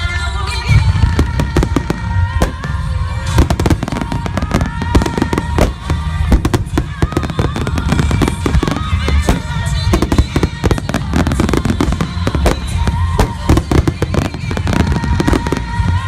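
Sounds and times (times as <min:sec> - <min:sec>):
fireworks bursting: 0:00.0 - 0:16.0
music playing: 0:00.0 - 0:16.0.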